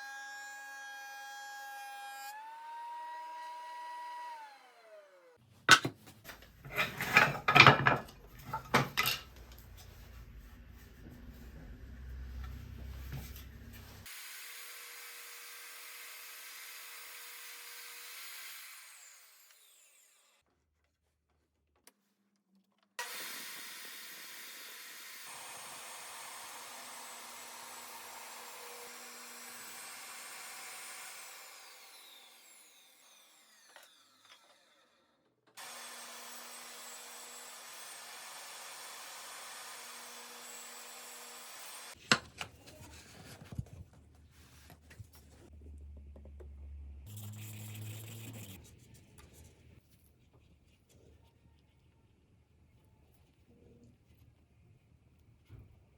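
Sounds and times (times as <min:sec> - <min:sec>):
table saw cutting wood: 0:00.0 - 0:05.8, 0:14.0 - 0:20.4, 0:23.0 - 0:42.0.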